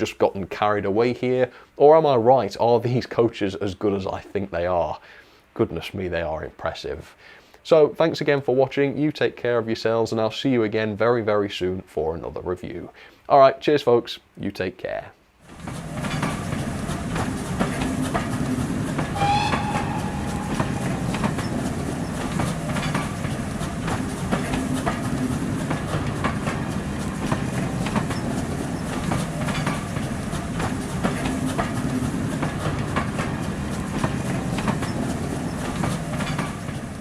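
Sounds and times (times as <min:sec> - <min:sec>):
train rumbling on track: 0:15.4 - 0:37.0
wheels clicking over rail joints: 0:15.4 - 0:37.0
train whistle: 0:19.0 - 0:22.2.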